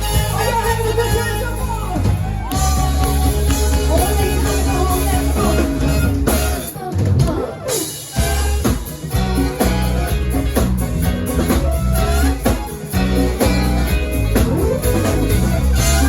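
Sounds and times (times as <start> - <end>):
rock song with singing: 0.0 - 16.0.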